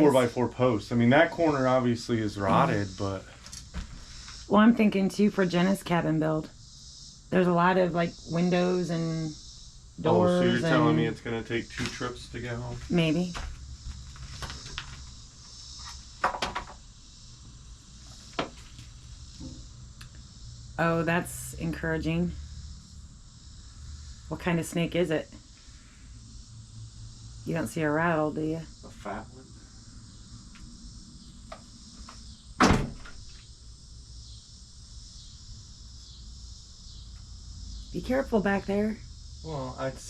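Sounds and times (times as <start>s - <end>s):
low background hum: 0.0s - 6.6s, 7.3s - 15.0s, 17.3s - 35.8s, 37.2s - 40.0s
insects chirring: 0.0s - 40.0s
wooden knocks and clatters: 16.2s - 16.8s.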